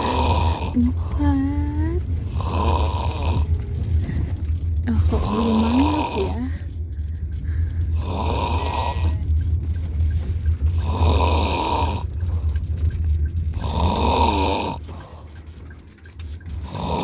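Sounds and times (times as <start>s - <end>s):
child snoring: 0.0s - 1.1s, 2.3s - 3.5s, 5.0s - 6.5s, 7.9s - 9.2s, 10.8s - 12.1s, 13.6s - 14.9s, 16.6s - 17.0s
steady low hum: 0.0s - 17.0s.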